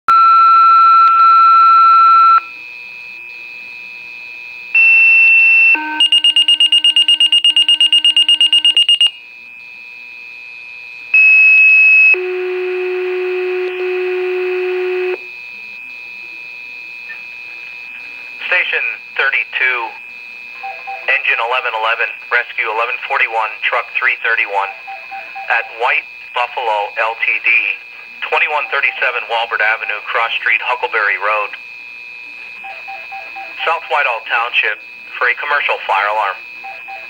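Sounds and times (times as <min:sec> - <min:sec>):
faint high whine: 0:00.1 - 0:37.0
pager alert tones: 0:24.7 - 0:25.8.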